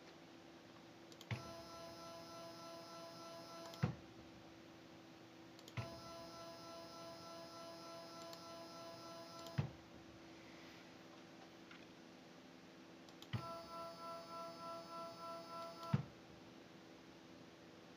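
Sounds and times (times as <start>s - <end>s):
faint hum: 0.0s - 17.9s
motor click: 1.1s - 1.6s, 3.5s - 4.0s, 5.6s - 6.2s, 8.2s - 8.6s, 9.4s - 9.7s, 15.5s - 16.1s.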